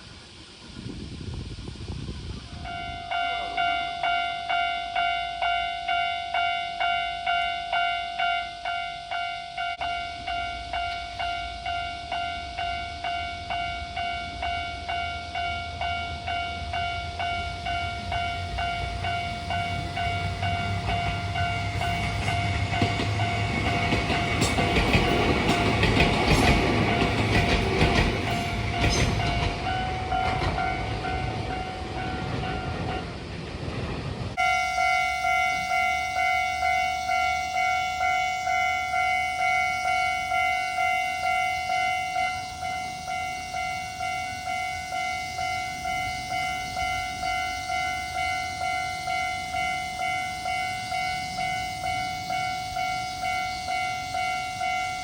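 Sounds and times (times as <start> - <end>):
crossing warning bell ringing: 2.5 - 55.0
electronic crossing bell: 2.6 - 33.2, 34.4 - 55.0
train wheels clacking: 15.9 - 34.4.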